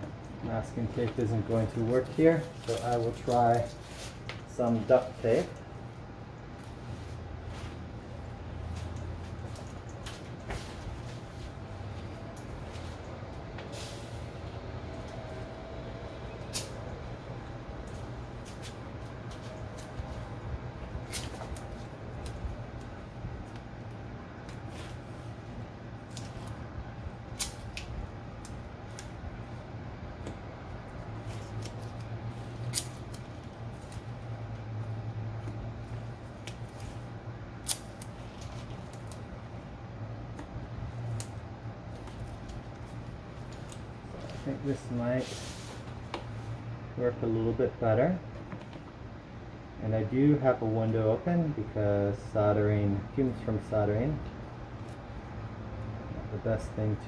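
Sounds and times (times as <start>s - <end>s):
steady low hum: 0.0s - 57.0s
hands handling tape and wires: 17.8s - 26.6s, 27.2s - 34.6s, 35.4s - 39.6s, 40.2s - 44.5s.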